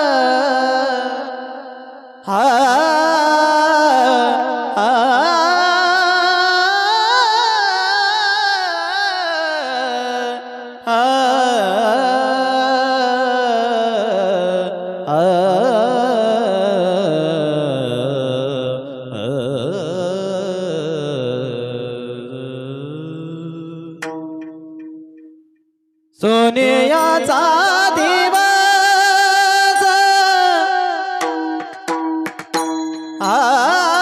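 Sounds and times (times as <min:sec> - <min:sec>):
person singing long notes: 0:26.2 - 0:32.5.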